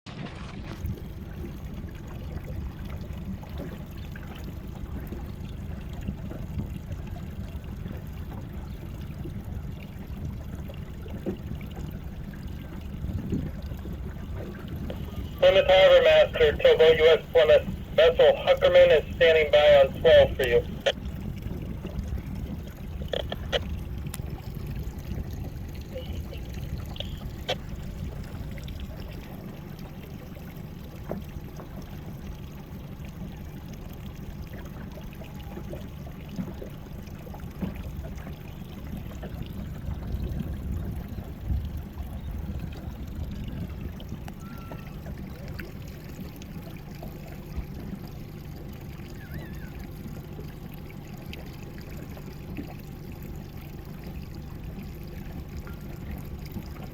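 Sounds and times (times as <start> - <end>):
sea water lapping: 0.1 - 56.9
low rumble: 16.2 - 29.4
small splashes and clicks: 20.4 - 33.1, 44.1 - 56.9.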